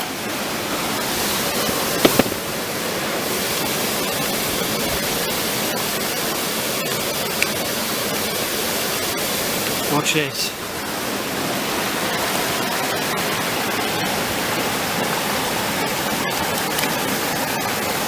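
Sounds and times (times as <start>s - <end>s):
waterfall rushing: 0.0s - 18.0s
sharp knocks: 2.0s - 2.4s.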